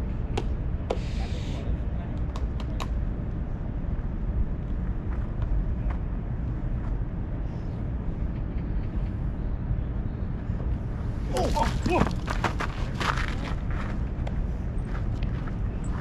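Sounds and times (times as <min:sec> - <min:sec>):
low outdoor rumble: 0:00.0 - 0:16.0.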